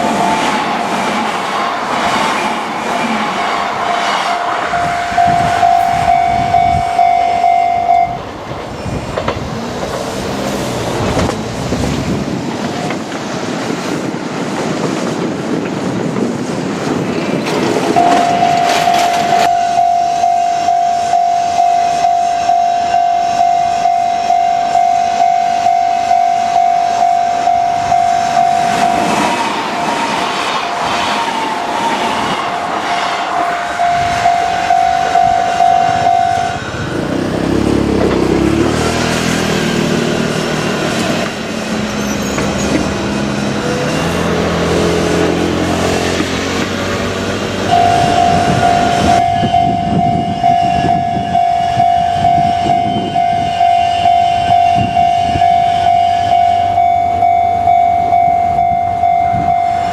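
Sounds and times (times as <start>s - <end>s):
wheels rumbling on rail: 0.0s - 59.9s
electric train motor whine: 4.4s - 8.4s, 31.6s - 59.9s
level crossing warning bell: 4.7s - 8.2s, 17.9s - 29.2s, 33.5s - 36.6s, 47.7s - 59.9s.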